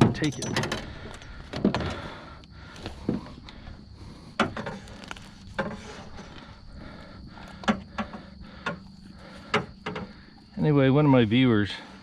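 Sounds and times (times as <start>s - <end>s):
knocks and clunks of gear: 0.0s - 2.1s, 4.4s - 6.4s, 7.4s - 10.2s.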